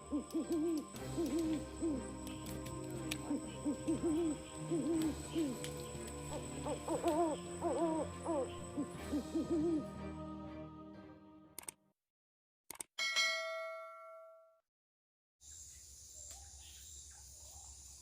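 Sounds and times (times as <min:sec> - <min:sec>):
animal hooting calls: 0:00.0 - 0:09.9.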